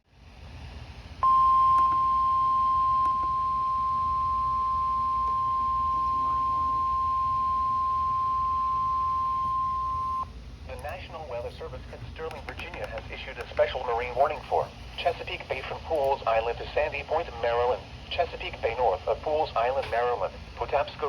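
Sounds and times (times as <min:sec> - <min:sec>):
steady alarm beep tone: 0:01.2 - 0:10.2.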